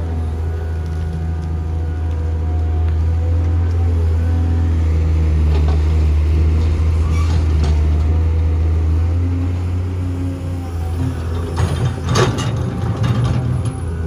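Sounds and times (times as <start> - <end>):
heavy diesel engine droning: 0.0 - 14.0.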